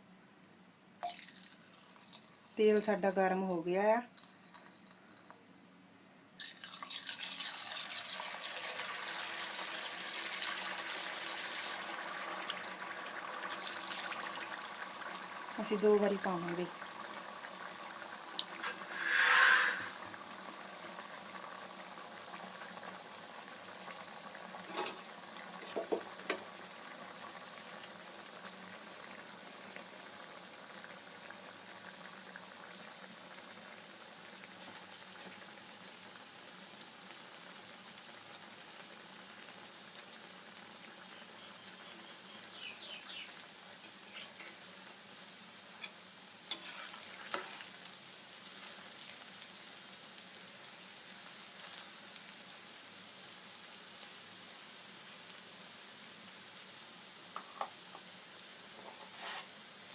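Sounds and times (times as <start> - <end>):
food sizzling in hot oil: 1.0 - 5.0, 6.4 - 59.9
loud oil hiss: 18.6 - 20.0.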